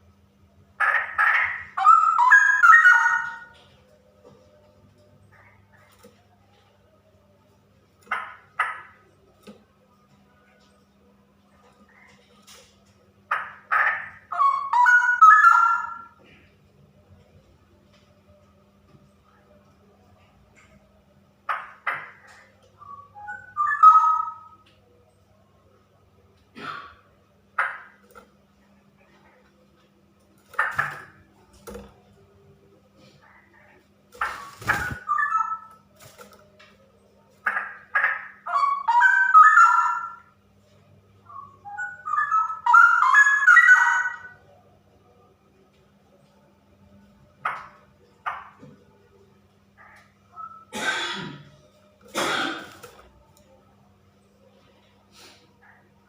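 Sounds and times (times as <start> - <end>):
bird warbling song: 0.8 - 3.7, 13.3 - 16.2, 21.5 - 24.6, 33.2 - 35.8, 41.2 - 44.4.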